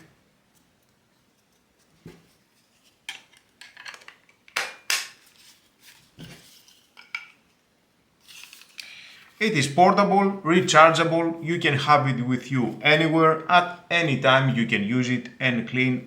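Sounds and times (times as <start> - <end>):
plastic parts clicking together: 3.1 - 5.2.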